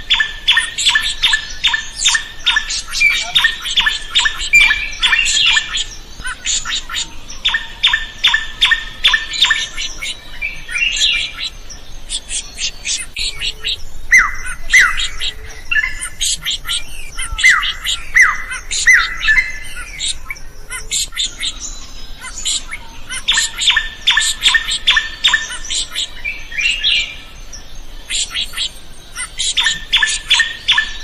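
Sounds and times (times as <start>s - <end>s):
drongo singing: 28.1s - 31.0s.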